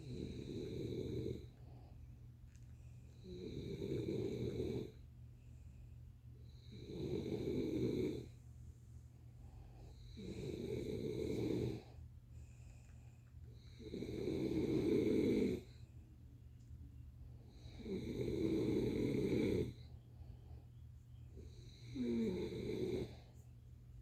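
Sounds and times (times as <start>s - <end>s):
person snoring: 0.0s - 1.5s, 3.2s - 5.0s, 6.6s - 8.3s, 10.0s - 12.0s, 13.7s - 15.7s, 17.6s - 19.8s, 21.7s - 23.2s.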